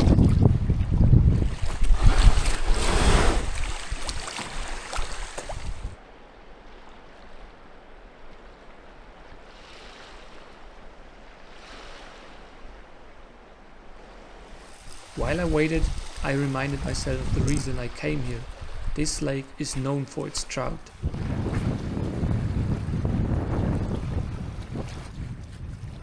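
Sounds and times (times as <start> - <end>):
wind buffeting microphone: 0.0 - 6.0, 14.3 - 19.3, 20.6 - 26.0
choppy waves around canoe: 0.0 - 26.0.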